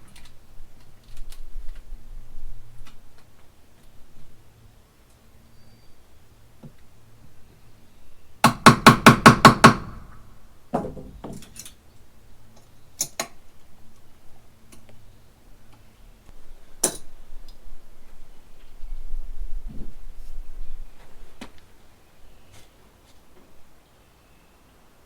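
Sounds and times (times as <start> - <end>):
hammer blows: 8.5 - 10.2.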